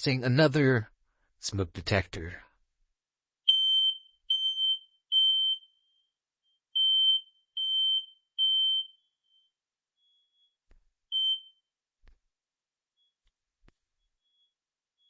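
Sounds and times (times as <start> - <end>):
smoke detector alarm beeps: 3.5 - 11.7.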